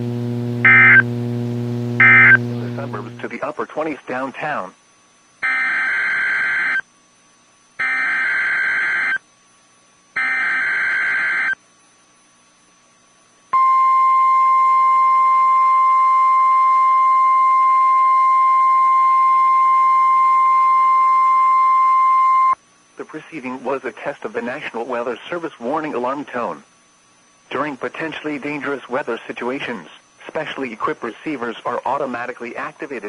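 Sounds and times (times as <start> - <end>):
buzzing digital header bursts: 0.0 - 3.3
steady warning alarm tone: 0.3 - 3.3, 5.4 - 6.8, 7.8 - 9.2, 10.2 - 11.6.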